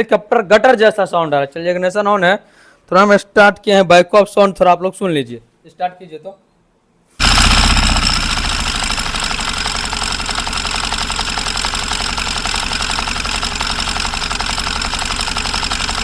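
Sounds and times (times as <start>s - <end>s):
grating gear rattle: 7.2s - 16.0s
motorcycle engine idling: 7.2s - 16.0s.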